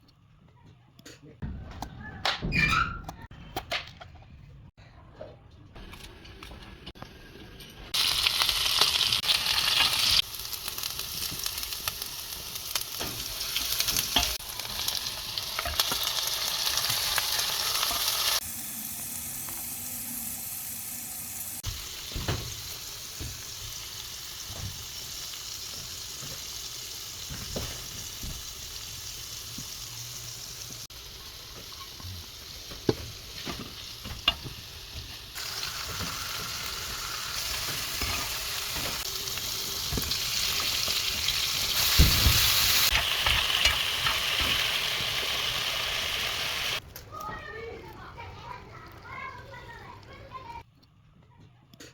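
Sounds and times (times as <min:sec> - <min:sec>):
food sizzling in hot oil: 0:07.9 - 0:46.8.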